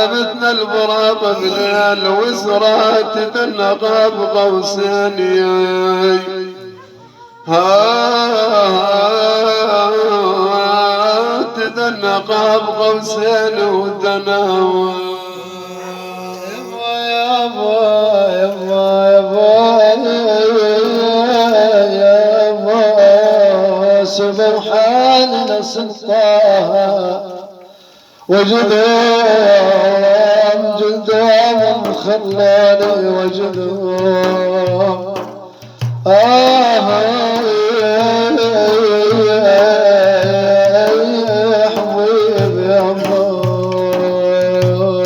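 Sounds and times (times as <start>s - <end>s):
person singing ornamented phrase: 14.9s - 17.3s
hand-drum beat: 30.9s - 45.0s.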